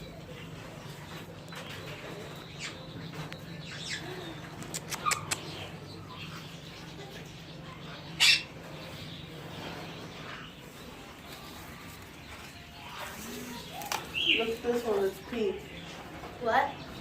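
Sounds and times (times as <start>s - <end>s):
parrots chirping and squawking: 2.0s - 10.9s.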